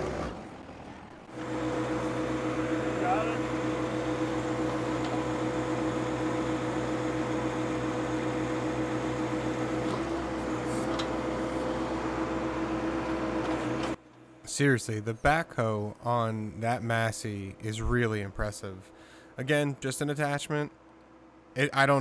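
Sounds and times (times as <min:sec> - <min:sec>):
diesel tractor engine running: 0:00.0 - 0:14.0
held whine: 0:01.3 - 0:14.0.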